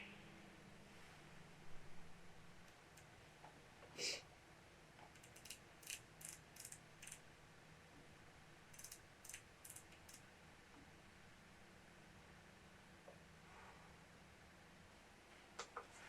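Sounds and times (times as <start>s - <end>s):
faint mechanical clicks: 5.0s - 7.2s, 8.7s - 10.2s.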